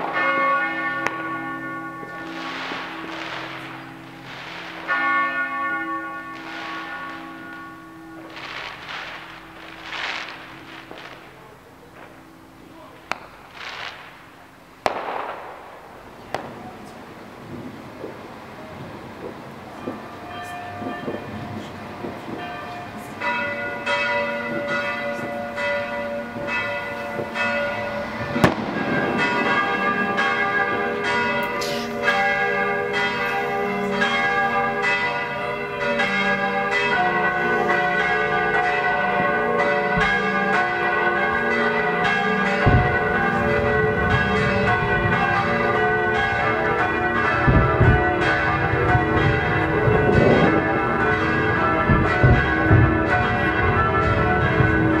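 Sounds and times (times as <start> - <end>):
church bells ringing: 0.0 - 55.0
firework bangs: 2.2 - 5.0, 6.3 - 7.6, 8.2 - 11.4, 13.1 - 18.4, 26.4 - 32.3, 42.5 - 55.0
low thumps: 42.6 - 46.4, 47.2 - 55.0.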